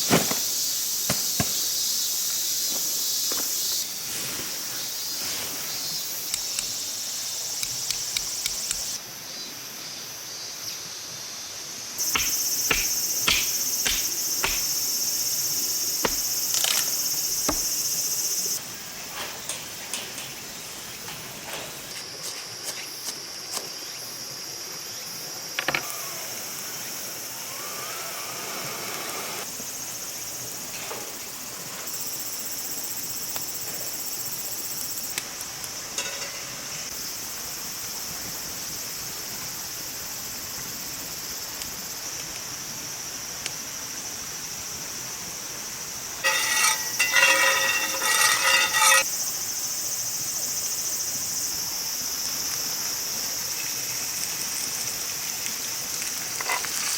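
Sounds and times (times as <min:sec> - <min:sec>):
high-pitched insect drone: 0:12.0 - 0:18.6
hiss: 0:25.7 - 0:32.0.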